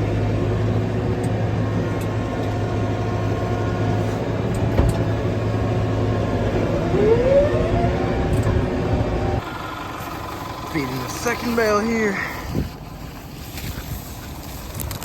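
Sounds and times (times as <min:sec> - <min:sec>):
tractor engine running: 0:00.0 - 0:15.0
rising whine: 0:01.9 - 0:11.7.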